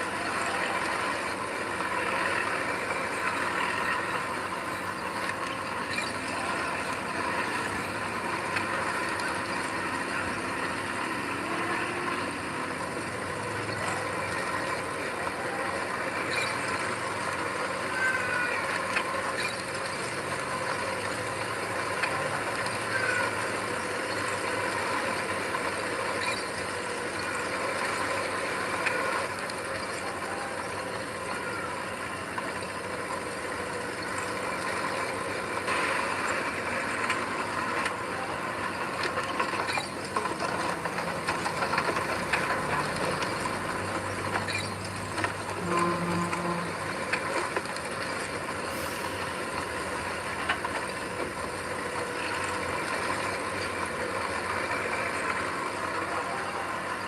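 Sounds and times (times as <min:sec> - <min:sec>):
diesel engine running: 0:00.0 - 0:18.0, 0:18.7 - 0:57.0.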